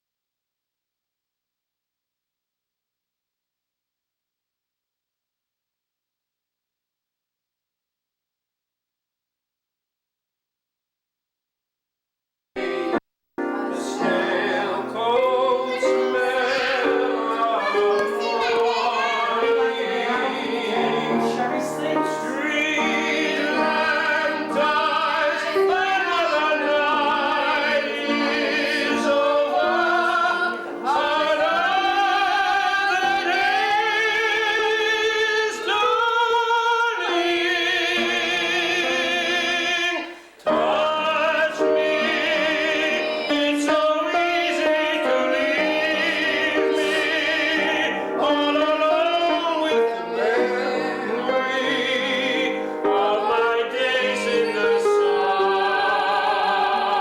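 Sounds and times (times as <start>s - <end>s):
musical accompaniment: 12.6s - 35.7s, 37.0s - 57.0s
opera singing with vibrato: 13.6s - 57.0s.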